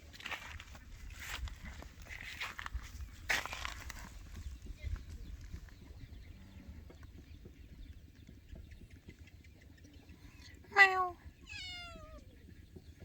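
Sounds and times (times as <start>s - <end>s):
cat meowing: 10.8s - 12.3s.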